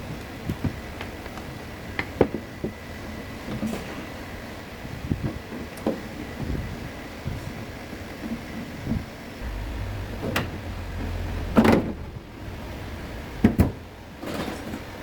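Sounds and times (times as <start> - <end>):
low hum: 9.4 - 14.8.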